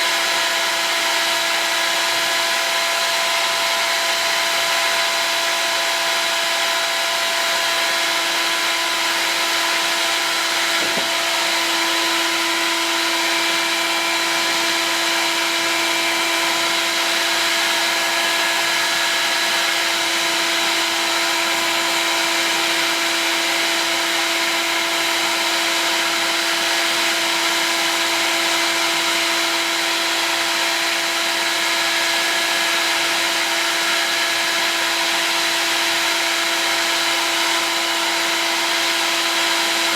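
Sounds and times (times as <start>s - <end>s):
heat gun blowing: 0.0s - 39.9s.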